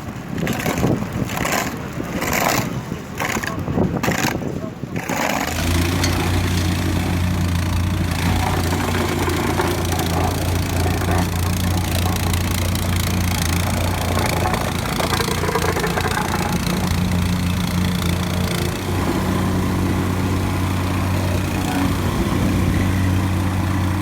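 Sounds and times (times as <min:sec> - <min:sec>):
machine motor humming: 0:05.4 - 0:24.0.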